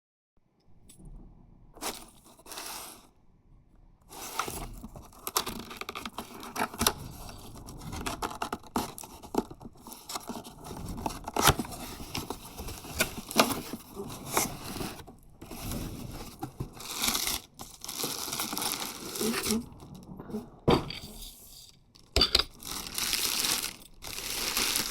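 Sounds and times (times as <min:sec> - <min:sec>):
cardboard scraping and rustling: 0:01.8 - 0:03.1, 0:04.1 - 0:21.7, 0:22.5 - 0:24.9
packing tape tearing: 0:16.1 - 0:19.6, 0:22.6 - 0:24.9.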